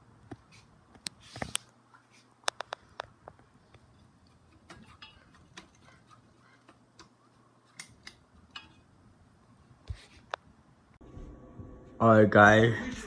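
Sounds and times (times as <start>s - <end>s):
faint irregular clicks: 2.4s - 8.7s
low hum: 10.9s - 13.0s.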